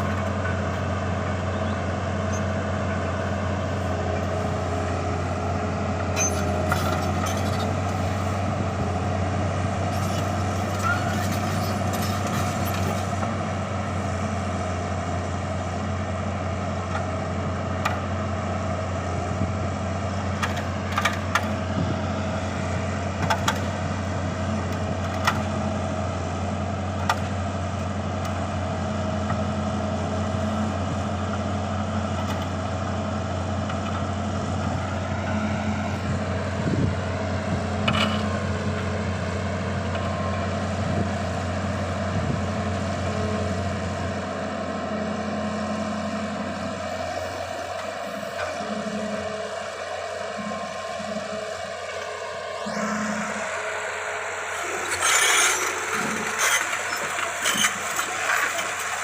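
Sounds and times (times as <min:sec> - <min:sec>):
diesel engine humming: 0:00.0 - 0:59.0.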